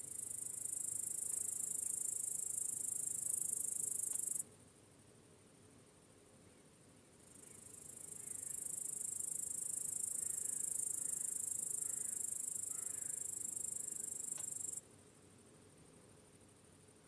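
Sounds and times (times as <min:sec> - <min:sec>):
crickets trilling: 0:00.1 - 0:04.4, 0:07.3 - 0:14.8.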